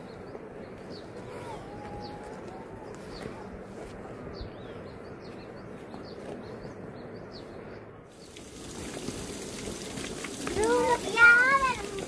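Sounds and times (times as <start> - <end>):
low outdoor rush: 0.0 - 12.0
small birds chirping: 0.0 - 12.0
broad steady hiss: 8.1 - 12.0.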